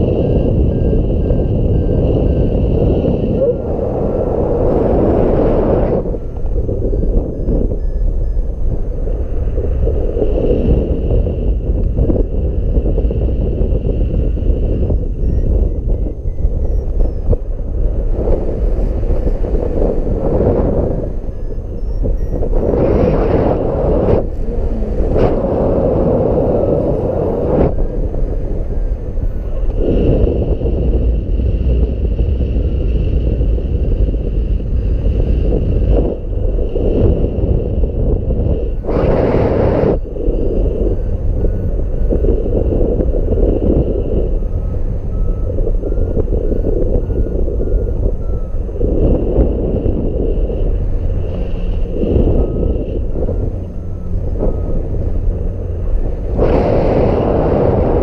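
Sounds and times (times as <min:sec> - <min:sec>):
wind buffeting microphone: 0:00.0 - 0:58.0
short beeps: 0:14.8 - 0:17.5, 0:20.8 - 0:25.2, 0:44.2 - 0:48.8, 0:51.2 - 0:56.4.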